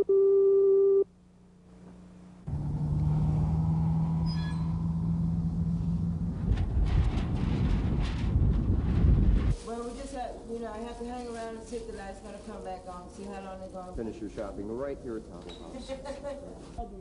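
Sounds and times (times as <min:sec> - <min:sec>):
steady electronic tone: 0:00.0 - 0:01.0
low vehicle rumble: 0:02.4 - 0:09.6.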